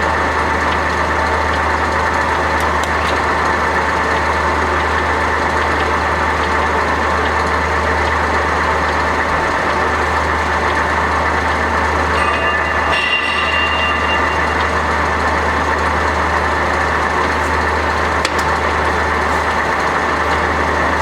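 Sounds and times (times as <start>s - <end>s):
lathe running with low hum: 0.0s - 21.0s.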